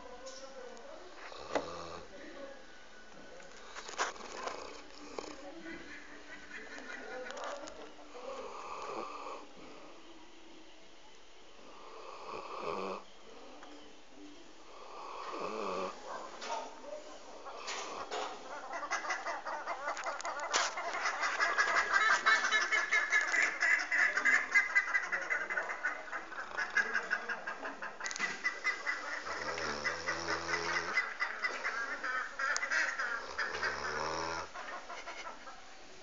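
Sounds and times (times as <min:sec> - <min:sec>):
dog snoring: 0:01.2 - 0:02.1, 0:03.6 - 0:05.4, 0:08.2 - 0:09.5, 0:11.6 - 0:13.0, 0:14.7 - 0:16.1, 0:29.3 - 0:31.0, 0:33.2 - 0:34.5.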